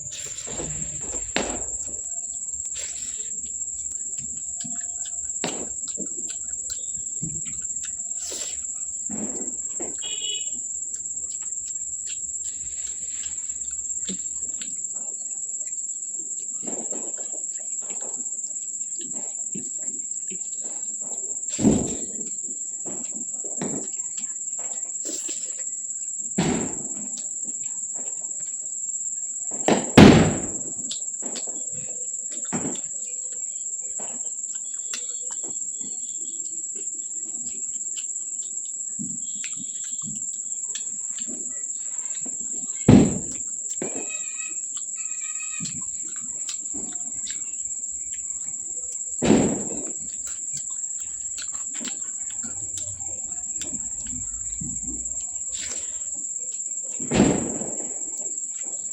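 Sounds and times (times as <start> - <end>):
thumps: 0.0 - 2.9
chewing and lip smacks: 0.2 - 25.8, 30.8 - 56.7.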